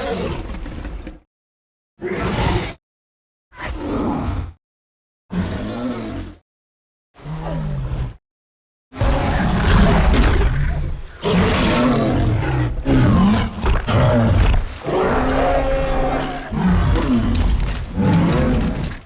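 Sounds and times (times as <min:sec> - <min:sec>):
dinosaur roars and growls: 0:05.3 - 0:06.4, 0:07.2 - 0:08.2, 0:09.0 - 0:19.0.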